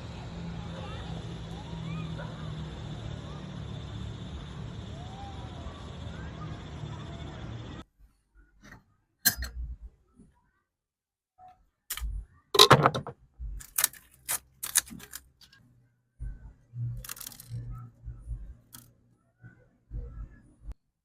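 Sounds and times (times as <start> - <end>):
objects clicking and knocking: 11.9 - 15.6, 16.9 - 17.9
faint low hum: 15.8 - 20.8.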